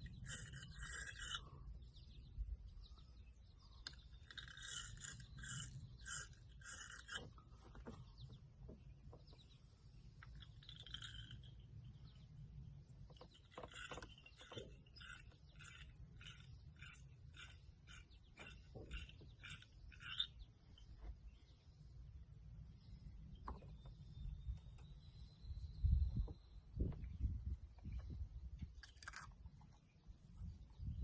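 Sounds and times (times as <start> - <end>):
bird song repeated notes: 0.0 - 31.0
low wind-like rumble: 21.3 - 31.0.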